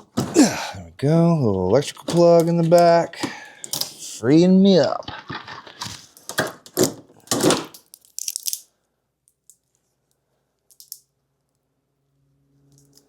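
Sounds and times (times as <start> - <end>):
plastic and metal parts clicking: 3.6 - 4.0.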